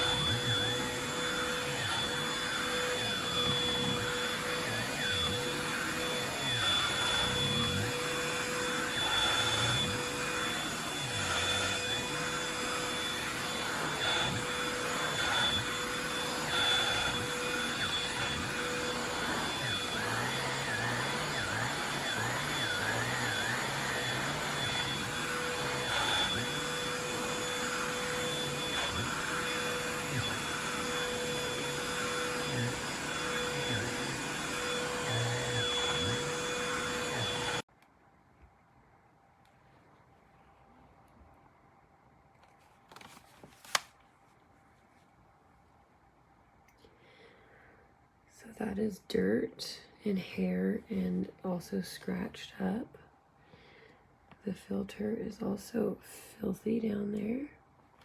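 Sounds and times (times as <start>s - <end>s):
hand vacuum motor whine: 0.0s - 37.7s.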